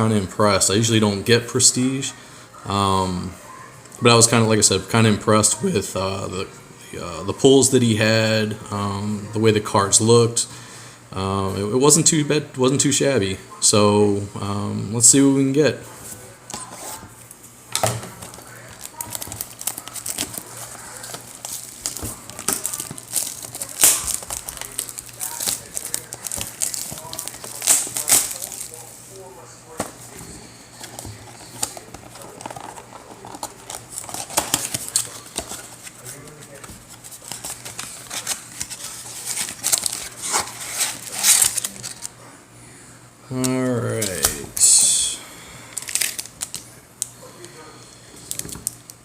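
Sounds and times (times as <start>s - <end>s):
plastic packaging crinkling and tearing: 17.2s - 42.2s, 45.7s - 47.1s, 48.2s - 49.0s.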